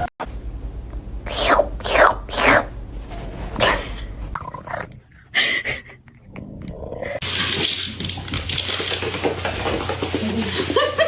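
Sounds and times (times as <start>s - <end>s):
steady low hum: 0.0s - 7.2s
pet animal sounds: 1.3s - 2.7s.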